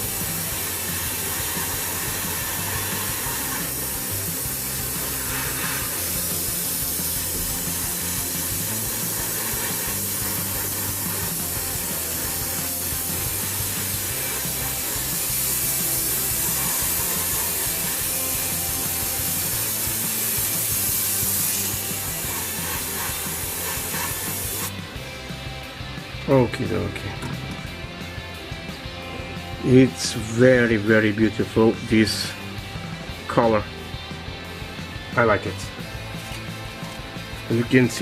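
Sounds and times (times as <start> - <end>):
airbrush spraying hiss: 0.0 - 25.4, 35.8 - 37.6
background music: 0.0 - 38.0.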